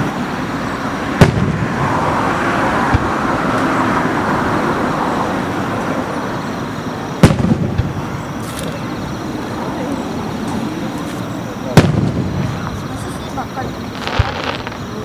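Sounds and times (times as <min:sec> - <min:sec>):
faint firework thud: 0:07.2 - 0:08.8, 0:10.5 - 0:12.8, 0:13.9 - 0:15.0
firework shell bursts: 0:13.9 - 0:15.0.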